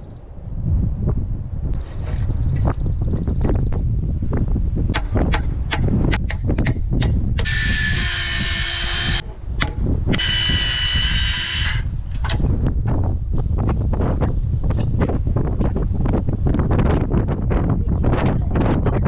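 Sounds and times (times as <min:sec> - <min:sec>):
wind rumble on microphone: 0:00.0 - 0:19.0
sharp knocks and taps: 0:04.9 - 0:07.2.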